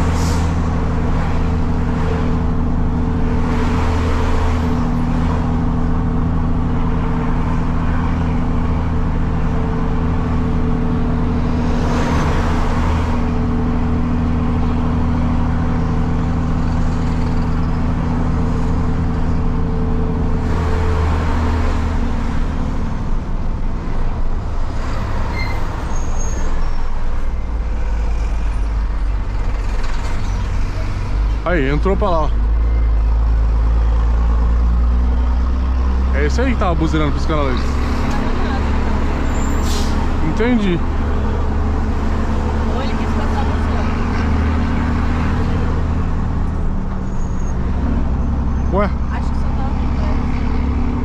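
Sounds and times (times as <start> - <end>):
diesel truck engine drone: 0.0 - 51.0
passing traffic rushing: 0.0 - 51.0.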